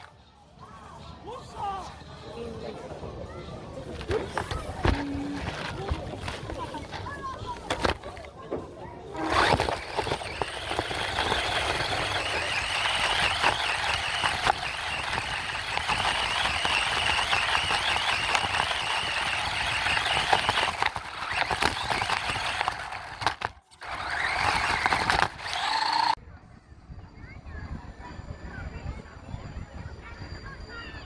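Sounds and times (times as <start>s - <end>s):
toy truck motor whine: 9.1s - 26.2s
rattling and crackling clicks: 9.2s - 26.2s.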